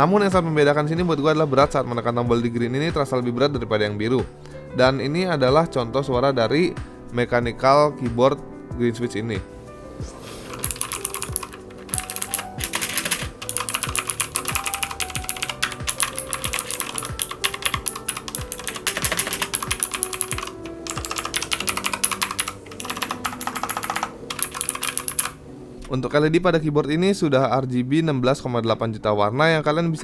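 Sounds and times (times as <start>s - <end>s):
quiet background music: 0.0s - 30.0s
mechanical keyboard key clicks: 10.5s - 25.4s.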